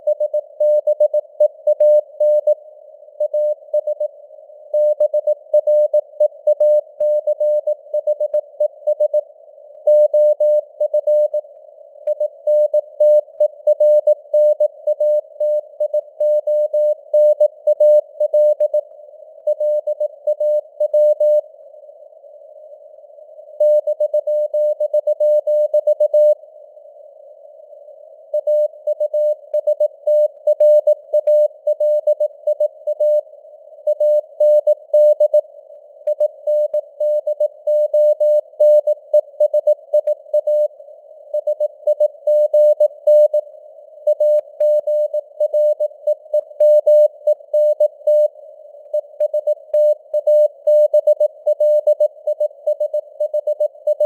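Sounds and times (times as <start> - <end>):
morse code sine tone: 0.0 - 21.5, 23.4 - 26.4, 27.9 - 54.0.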